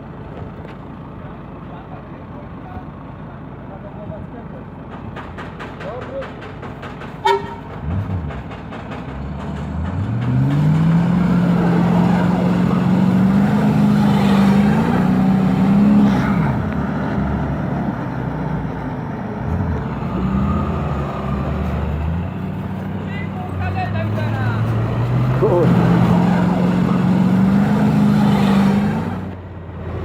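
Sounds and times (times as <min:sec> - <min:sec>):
heavy vehicle engine revving: 0:07.3 - 0:30.0.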